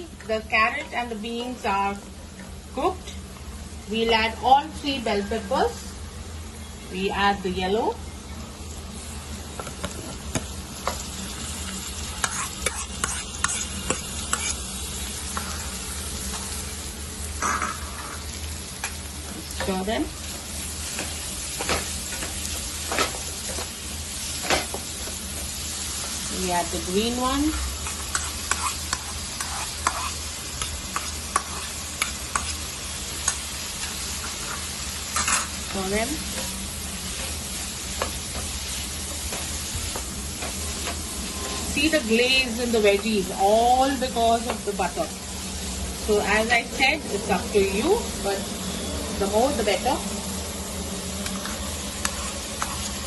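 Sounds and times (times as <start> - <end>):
vegetables sizzling in a pan: 0.0 - 53.0
spatula scraping a pan: 12.1 - 15.9, 27.4 - 32.6, 33.2 - 35.6, 51.4 - 53.0.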